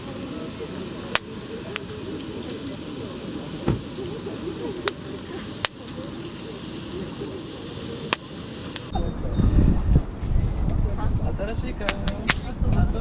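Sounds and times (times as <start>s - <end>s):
campfire hissing: 0.0s - 8.9s
sharp pops of burning wood: 1.0s - 8.9s.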